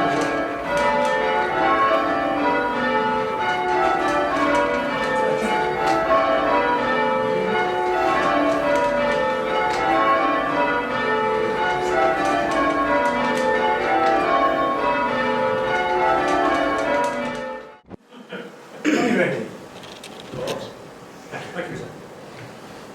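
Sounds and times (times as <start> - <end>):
tower bells ringing: 0.0 - 17.8.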